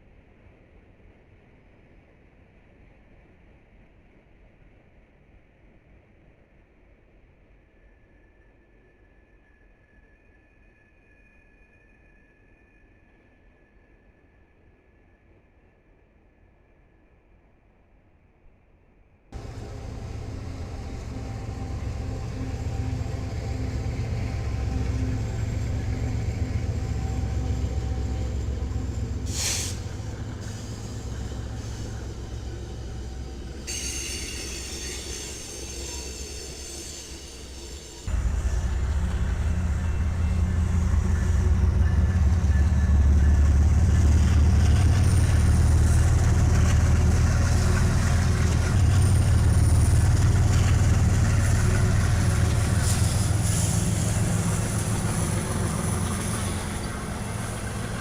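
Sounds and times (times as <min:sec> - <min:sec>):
train rumbling on rails: 0:19.4 - 0:58.0
wheel squeal: 0:33.5 - 0:38.3.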